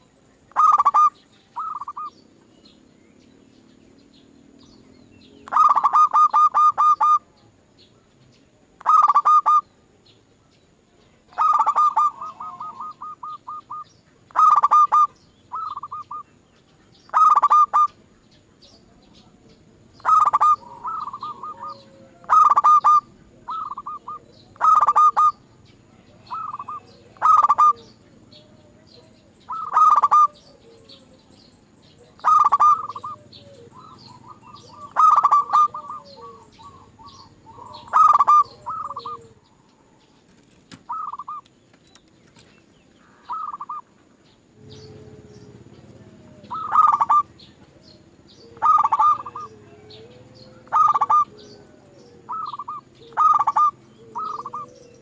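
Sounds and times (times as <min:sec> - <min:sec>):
dove cooing: 0:00.0 - 0:02.2, 0:05.4 - 0:07.4, 0:08.8 - 0:09.7, 0:11.2 - 0:16.4, 0:17.0 - 0:18.0, 0:20.0 - 0:40.1, 0:40.8 - 0:41.5, 0:43.0 - 0:44.0, 0:44.6 - 0:55.0.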